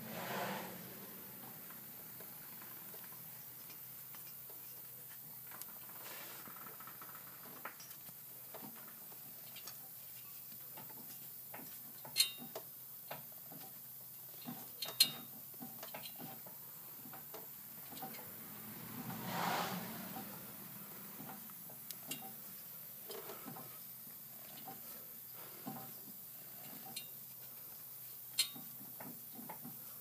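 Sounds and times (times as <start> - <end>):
faint metallic ticking: 20.1 - 30.0.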